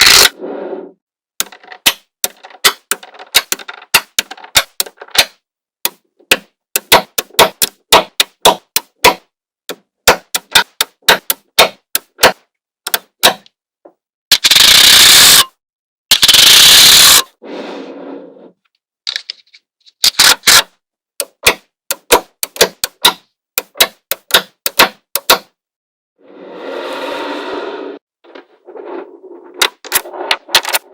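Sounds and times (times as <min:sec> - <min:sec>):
magnetic balls clicking together: 0:01.4 - 0:08.9, 0:14.3 - 0:15.4.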